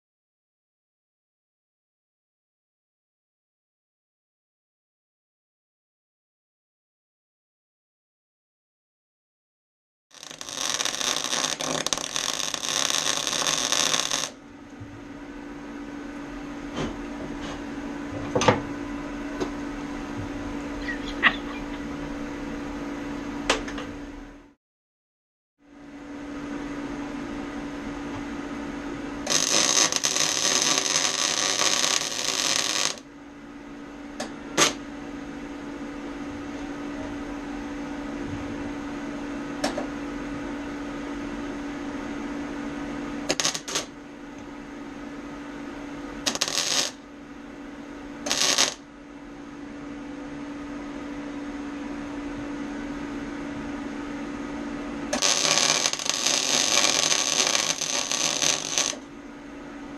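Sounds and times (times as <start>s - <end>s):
welding arc crackling: 10.1s - 14.4s, 29.2s - 33.0s, 34.6s - 34.8s, 43.3s - 43.9s, 46.2s - 47.0s, 48.3s - 48.8s, 55.1s - 59.0s
steady hum: 10.2s - 24.6s, 25.6s - 59.9s.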